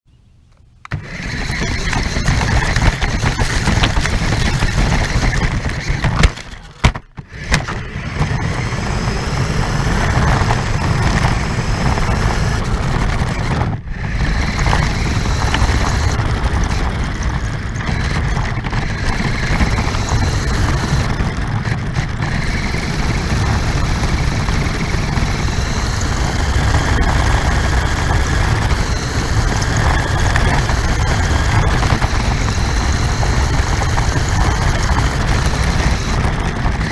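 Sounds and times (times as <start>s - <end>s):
rumble and rattle: 0.4s - 36.9s
radio-controlled car motor whine: 0.9s - 36.9s.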